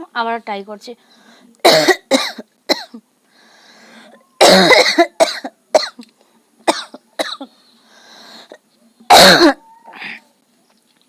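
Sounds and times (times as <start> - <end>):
woman coughing: 1.6 - 3.0, 4.4 - 6.0, 6.7 - 7.5, 9.1 - 9.6.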